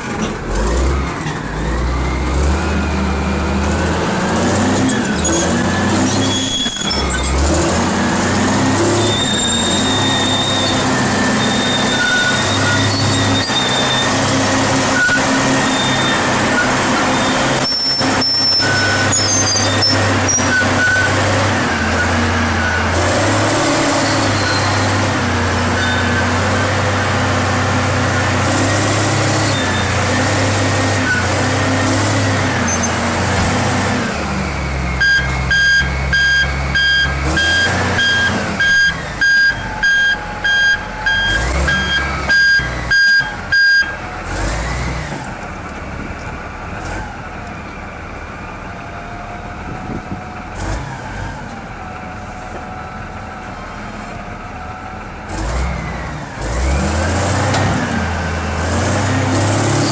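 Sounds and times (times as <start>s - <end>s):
heavy machine engine running: 0.0s - 59.9s
backup alarm beeping: 35.0s - 44.0s.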